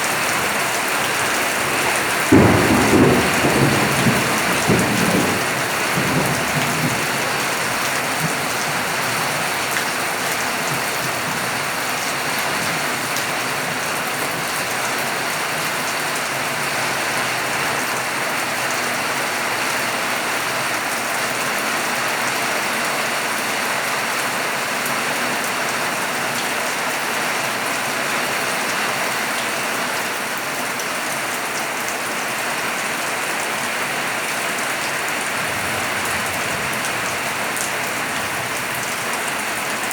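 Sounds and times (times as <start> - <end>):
rain pattering on surfaces: 0.0 - 39.9
thunder rumble: 0.2 - 8.9, 35.2 - 39.1.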